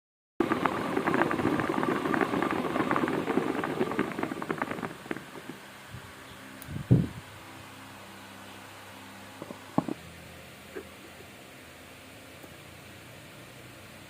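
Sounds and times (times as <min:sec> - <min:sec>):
milling balls clattering in jar: 0:00.4 - 0:05.7.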